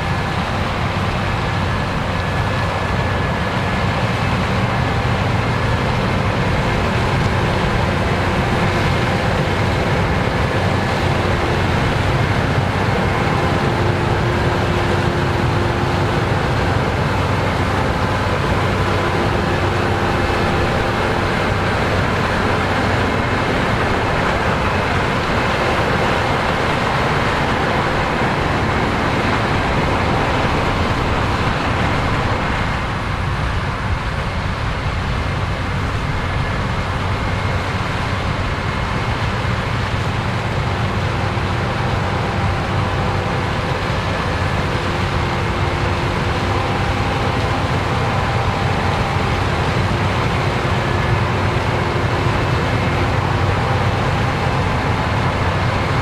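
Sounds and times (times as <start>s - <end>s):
combine harvester running: 0.0s - 56.0s.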